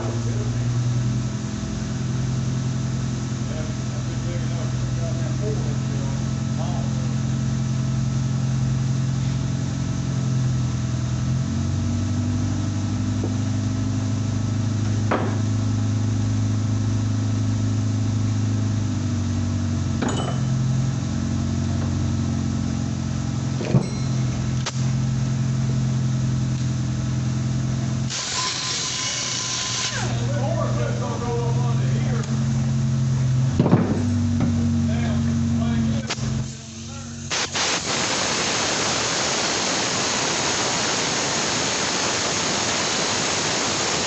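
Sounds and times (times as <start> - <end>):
motor humming: 13.0 - 44.0
sharp metallic knocks: 20.0 - 20.6.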